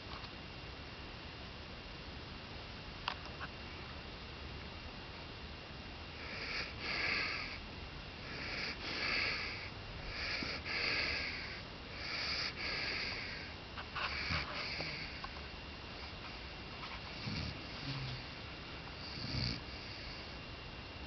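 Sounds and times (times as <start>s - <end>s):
puppy snoring: 6.2s - 7.6s, 8.2s - 15.4s, 16.0s - 18.4s, 19.0s - 20.4s.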